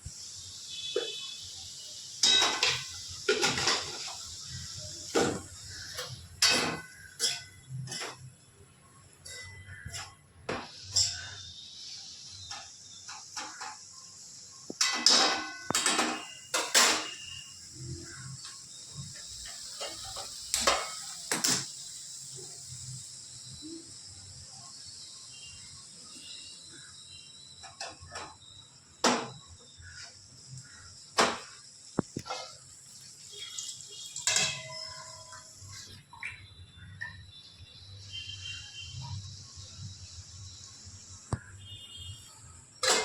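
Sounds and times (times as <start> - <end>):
crickets chirring: 0.0 - 43.0
dishes and utensils clinking: 2.2 - 8.3, 9.2 - 11.4, 14.7 - 21.8, 33.4 - 36.0, 42.8 - 43.0.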